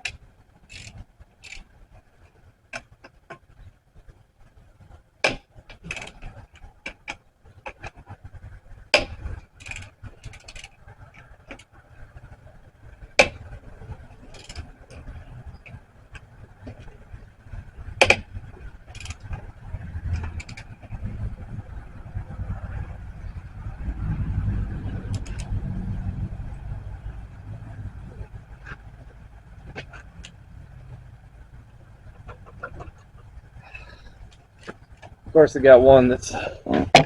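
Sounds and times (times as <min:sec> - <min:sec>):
lug wrench clicking on lug nuts: 0:00.0 - 0:01.6, 0:05.2 - 0:07.2, 0:08.9 - 0:10.8, 0:14.2 - 0:16.9, 0:18.0 - 0:21.0.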